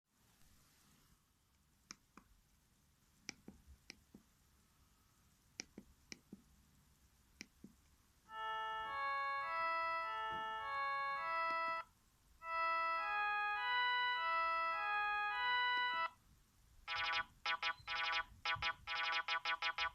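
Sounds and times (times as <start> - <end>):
mobile phone ringtone melody: 8.3 - 16.2, 16.9 - 19.9.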